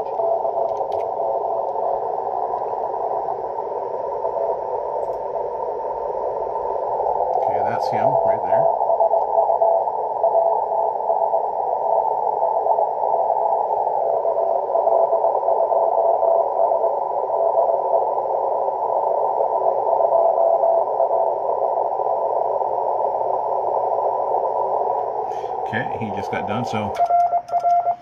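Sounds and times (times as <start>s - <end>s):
radio band hiss: 0.0s - 15.6s, 16.3s - 28.0s
morse code tone: 25.7s - 28.0s.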